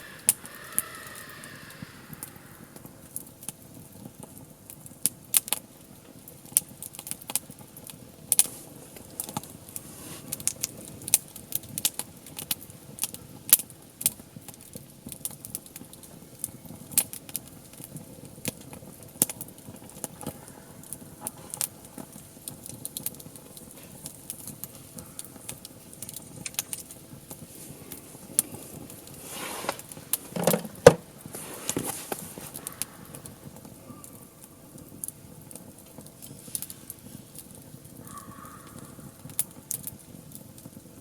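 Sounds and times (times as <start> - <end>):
wood fire crackling: 0.0 - 41.0
knocks and rustling: 29.6 - 32.5.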